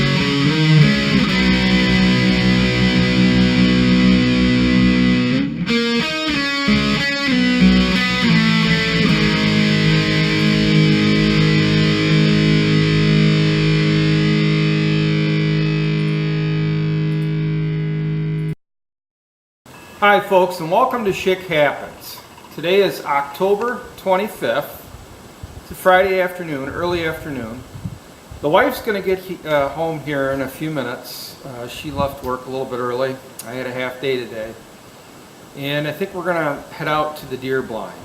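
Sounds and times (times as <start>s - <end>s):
distorted electric guitar chords: 0.0s - 18.6s.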